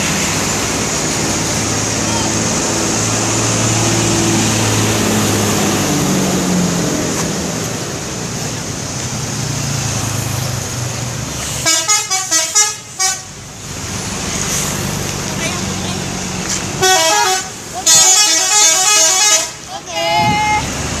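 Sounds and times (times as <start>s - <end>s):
multi-tone musical bus horn: 11.6s - 13.4s, 16.8s - 20.6s.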